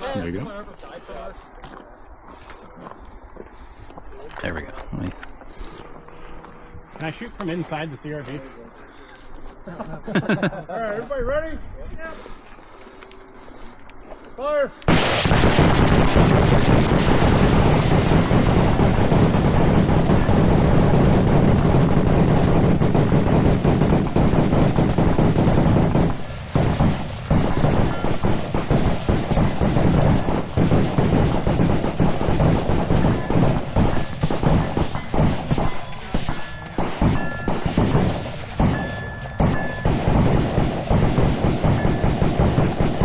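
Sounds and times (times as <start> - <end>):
guns firing: 14.9 - 43.0.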